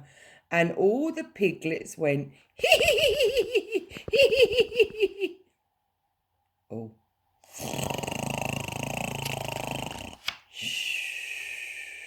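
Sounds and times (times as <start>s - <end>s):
person imitating dog snoring: 7.4s - 10.3s.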